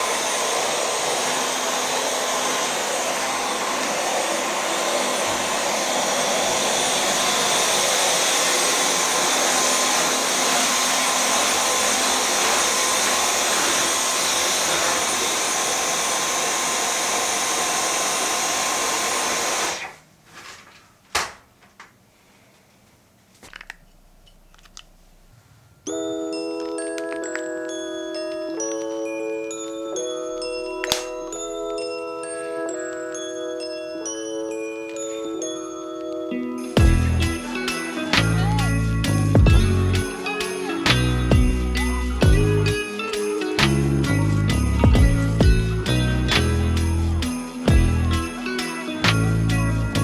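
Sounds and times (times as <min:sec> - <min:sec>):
small motorised appliance whooshing: 0:00.0 - 0:20.0.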